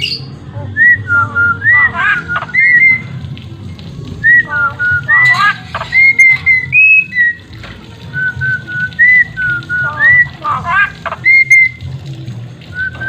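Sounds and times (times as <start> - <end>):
bird whistling notes: 0.0 - 3.1, 4.2 - 7.5, 8.1 - 11.8
bird harsh chattering call: 1.7 - 3.1, 5.1 - 7.4.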